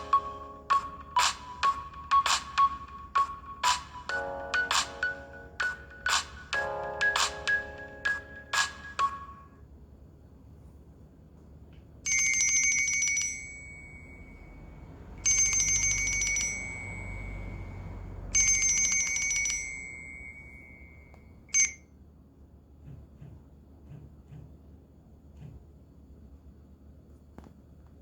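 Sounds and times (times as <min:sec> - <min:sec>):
phone ringtone trill: 0:00.0 - 0:09.5, 0:15.2 - 0:21.8.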